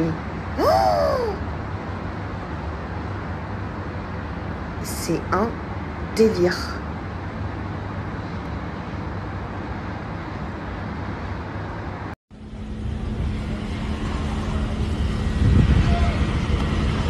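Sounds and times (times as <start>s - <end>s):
low outdoor rumble: 0.0s - 17.0s
steady low hum: 0.0s - 17.0s.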